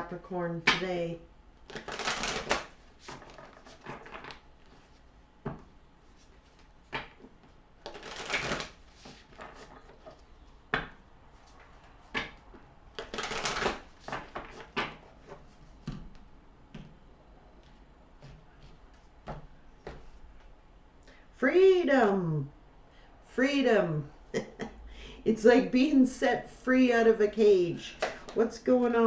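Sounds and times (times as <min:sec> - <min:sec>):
cards being shuffled: 0:01.7 - 0:05.0, 0:06.2 - 0:10.3, 0:12.9 - 0:15.4.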